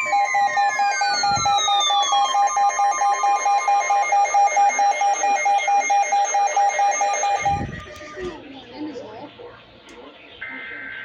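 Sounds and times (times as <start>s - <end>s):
electronic alarm beeping rapidly: 0.0s - 8.2s
falling electronic sweep tones: 0.0s - 8.2s.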